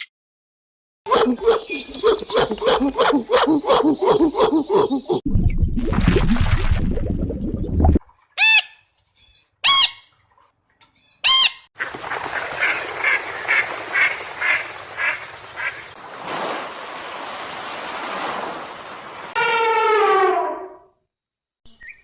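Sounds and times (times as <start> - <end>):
waterfowl honking: 11.2 - 16.0.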